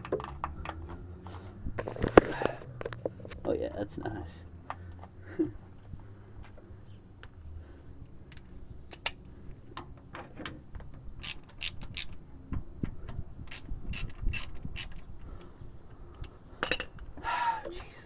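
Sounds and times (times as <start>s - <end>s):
ratchet wrench clicking: 11.2s - 12.2s, 13.5s - 15.0s.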